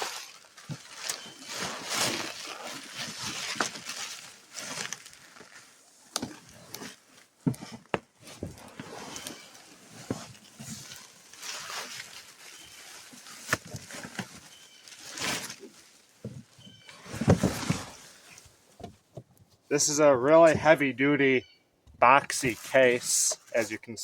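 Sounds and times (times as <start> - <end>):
cardboard box rustling: 0.6 - 19.3.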